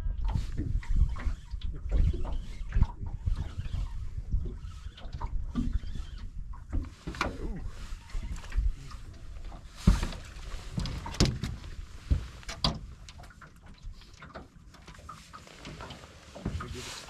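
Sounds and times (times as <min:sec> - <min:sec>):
gear knocking on a boat: 0:00.0 - 0:16.8
rustling: 0:06.9 - 0:17.0.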